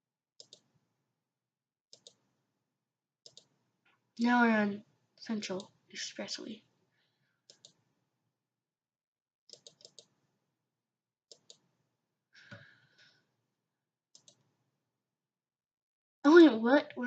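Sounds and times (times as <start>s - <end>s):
faint computer mouse clicks: 0.4s - 0.6s, 2.0s - 2.2s, 3.3s - 3.5s, 7.5s - 7.8s, 9.5s - 10.1s, 11.3s - 11.6s, 14.2s - 14.4s.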